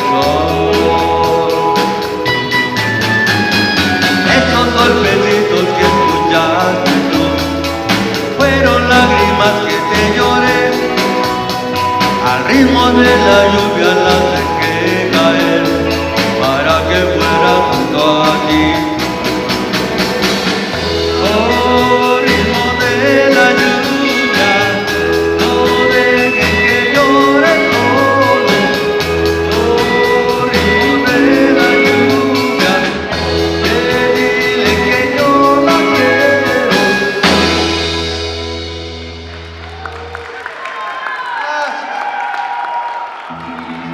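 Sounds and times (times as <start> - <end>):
band playing ballad: 0.0 - 43.9.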